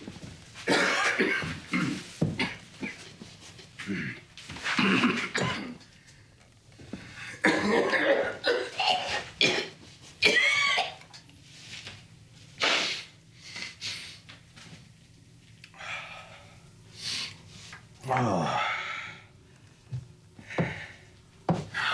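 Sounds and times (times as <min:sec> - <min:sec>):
man coughing: 0:00.7 - 0:03.1, 0:04.8 - 0:05.8, 0:07.4 - 0:11.0.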